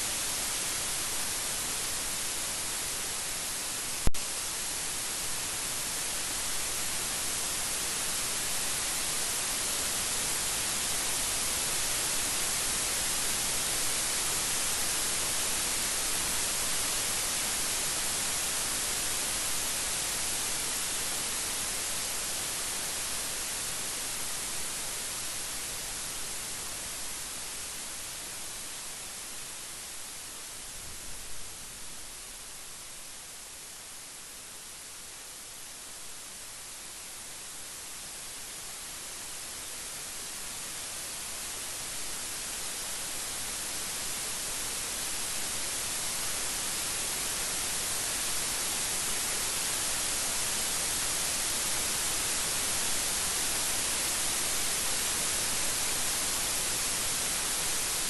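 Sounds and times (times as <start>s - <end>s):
steady rain hiss: 0.0s - 58.0s.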